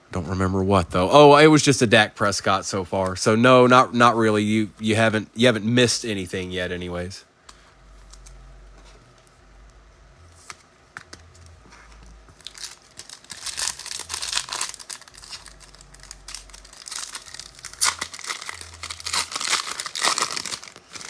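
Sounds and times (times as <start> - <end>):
wrappers torn and crinkled: 12.3 - 21.0.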